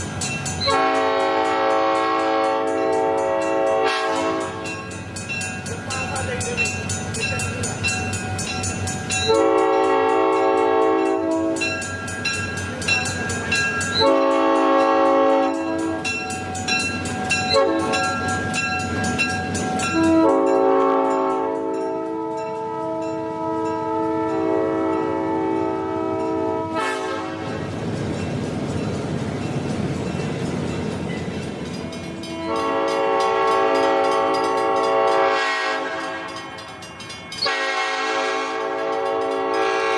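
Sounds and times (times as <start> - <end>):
locomotive air horn blasts: 0.7 - 4.6, 9.3 - 11.7, 14.0 - 16.1, 17.5 - 18.0, 20.0 - 27.6, 32.3 - 36.3, 37.4 - 39.9.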